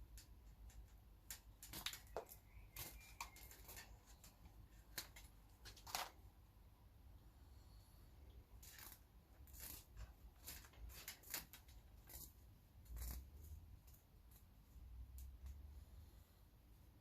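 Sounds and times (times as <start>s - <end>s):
cable rustling and clicking: 0.0s - 6.4s, 8.6s - 14.5s.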